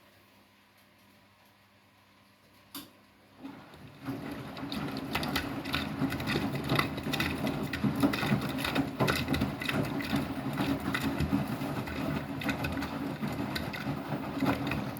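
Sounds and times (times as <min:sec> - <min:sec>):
washing machine motor hum: 0:03.1 - 0:14.9.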